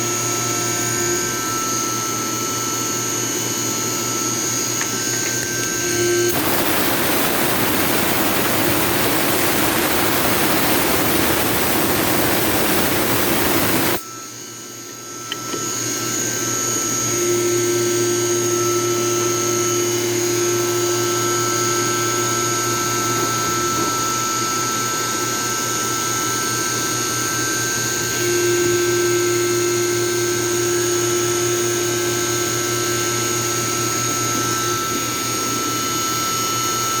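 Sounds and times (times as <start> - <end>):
low machine hum: 0.0 - 15.5
milling machine whine: 0.0 - 37.0
coolant rushing noise: 6.2 - 14.0.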